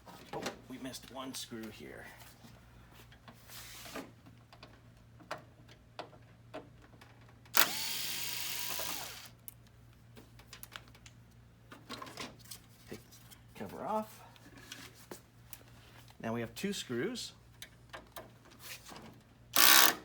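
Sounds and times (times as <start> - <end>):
electric screwdriver running: 7.6 - 9.3, 19.6 - 20.0.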